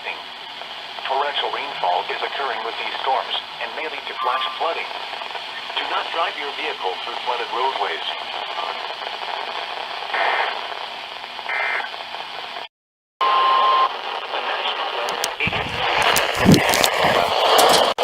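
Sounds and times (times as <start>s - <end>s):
crackling static with pops: 0.0s - 12.7s, 13.8s - 18.0s
radio static hiss: 0.0s - 18.0s
steady beep tone: 4.2s - 4.6s
digital data tone bursts: 4.2s - 4.7s.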